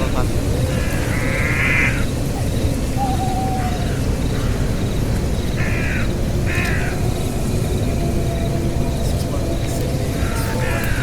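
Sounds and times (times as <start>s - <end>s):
harsh animal calls: 0.0s - 4.9s, 9.4s - 11.0s.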